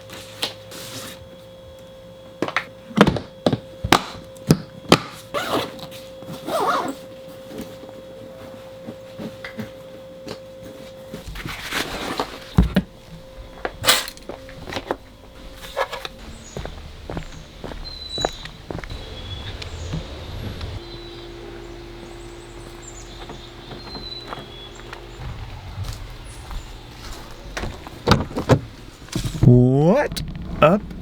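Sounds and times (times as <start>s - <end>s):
knocks and thumps: 23.2s - 29.5s.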